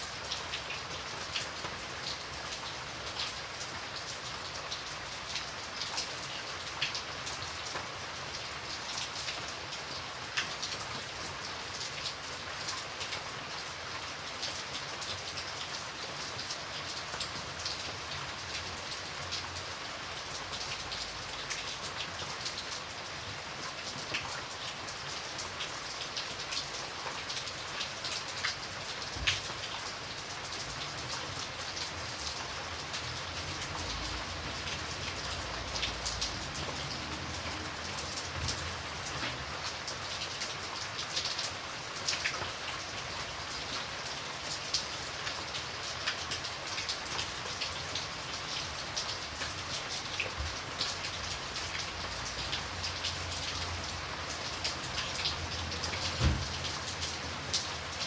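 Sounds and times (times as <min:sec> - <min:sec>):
raindrops ticking on a surface: 0:00.0 - 0:58.0
steady rain hiss: 0:00.0 - 0:58.0.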